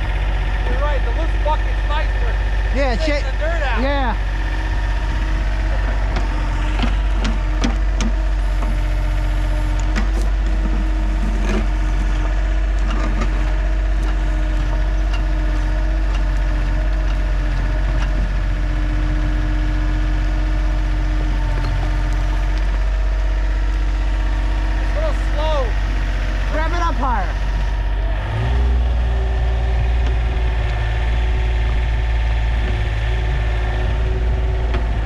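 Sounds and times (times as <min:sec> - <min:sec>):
excavator engine whining: 0:00.0 - 0:35.0
sharp knocks and clatter: 0:06.0 - 0:08.8, 0:09.8 - 0:18.5.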